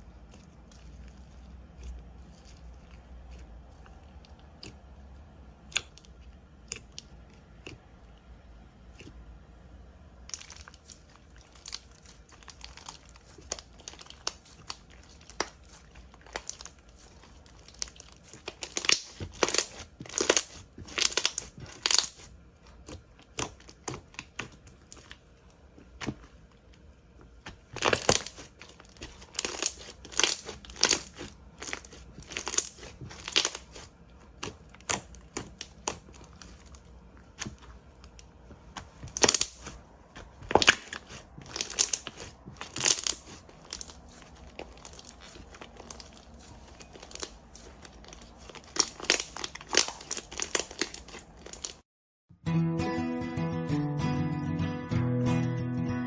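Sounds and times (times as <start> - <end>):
slime crackling and snapping: 5.6 - 7.9, 10.1 - 51.8.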